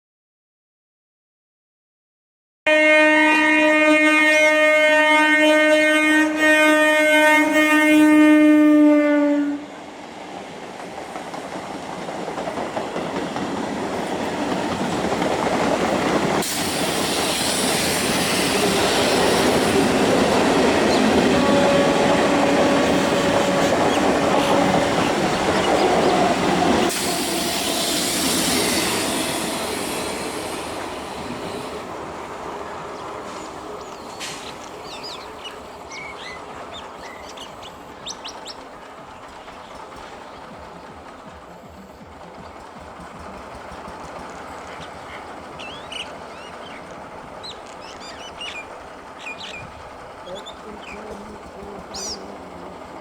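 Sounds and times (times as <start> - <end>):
train horn blast: 2.7 - 9.8, 16.4 - 31.9
train passing with wheel clatter: 2.7 - 53.0.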